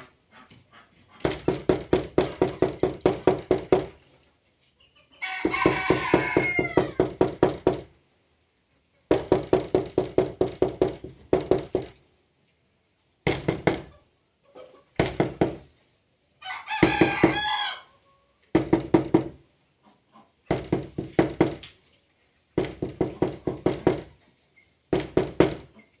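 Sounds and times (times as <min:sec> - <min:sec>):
knocking on a door: 0:01.2 - 0:04.0, 0:05.4 - 0:07.9, 0:09.1 - 0:12.0, 0:13.2 - 0:13.9, 0:15.0 - 0:15.6, 0:16.8 - 0:17.5, 0:18.5 - 0:19.4, 0:20.5 - 0:21.6, 0:22.6 - 0:24.2, 0:24.9 - 0:25.7
rooster crowing: 0:05.2 - 0:07.2, 0:16.4 - 0:18.0.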